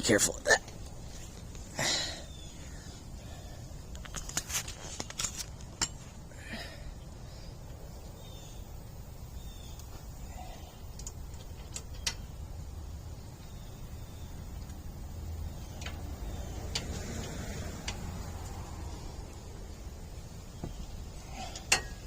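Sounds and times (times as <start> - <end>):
low steady rumble: 5.0 - 22.0
hand tools clicking on metal: 21.4 - 22.0.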